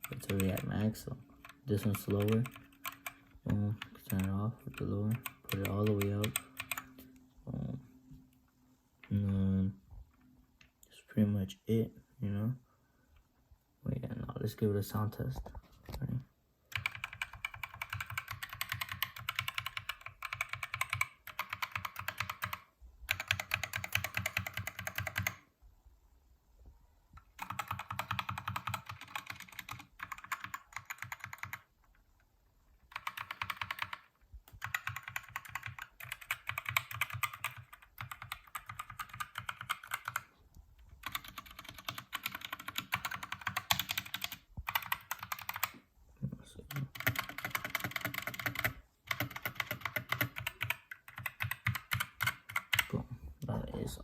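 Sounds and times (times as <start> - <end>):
mechanical keyboard typing: 0.0 - 6.9, 16.7 - 25.4, 27.3 - 31.8, 32.9 - 40.3, 41.0 - 45.8, 46.7 - 52.9.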